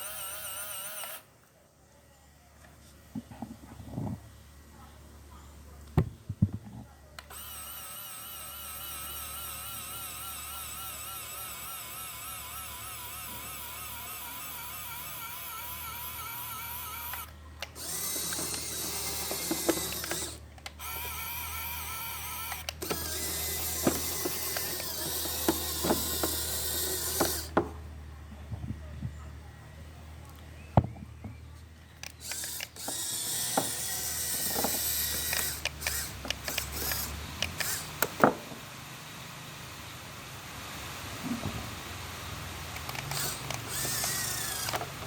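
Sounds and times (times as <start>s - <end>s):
small motor whirring: 0.0s - 1.3s, 7.2s - 27.6s, 32.0s - 38.4s, 42.3s - 45.0s
gear clicks and ratcheting: 7.3s - 27.5s, 32.0s - 38.2s, 42.8s - 45.0s.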